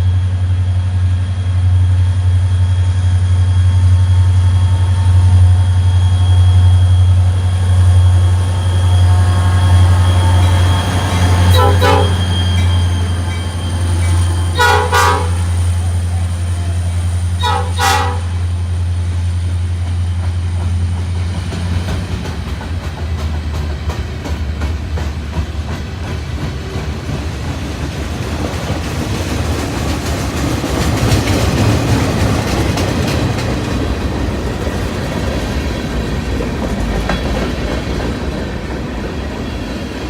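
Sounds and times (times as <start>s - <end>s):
diesel locomotive droning: 0.0s - 40.0s
locomotive air horn blasts: 11.4s - 12.4s, 14.5s - 15.9s, 16.6s - 18.6s
wheels clicking over rail joints: 19.8s - 40.0s.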